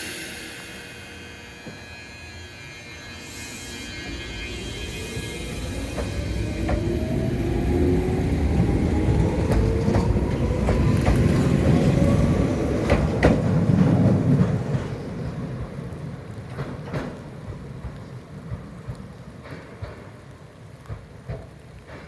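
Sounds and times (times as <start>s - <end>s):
electric train motor whine: 0.0s - 13.4s
wheels rumbling on rail: 0.0s - 22.0s.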